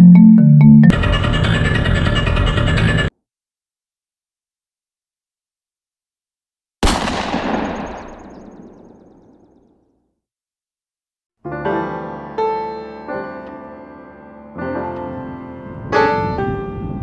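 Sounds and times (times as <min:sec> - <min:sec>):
piano chords: 0:00.0 - 0:01.0, 0:11.5 - 0:17.0
loud boom: 0:06.8 - 0:09.6.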